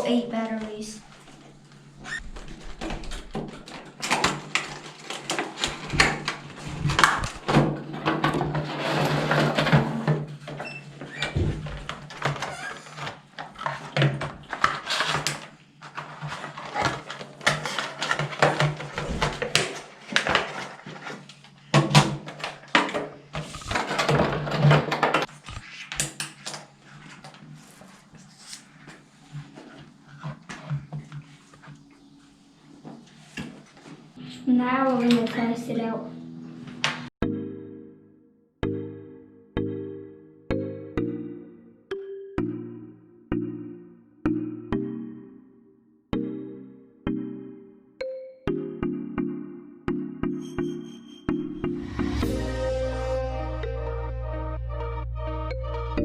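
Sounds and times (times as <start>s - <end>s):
plastic toy and packaging handled: 2.7s - 9.9s, 11.9s - 31.8s.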